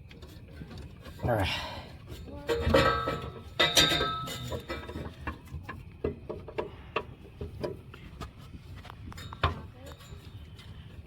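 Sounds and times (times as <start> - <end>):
metallic clank: 2.4 - 5.1.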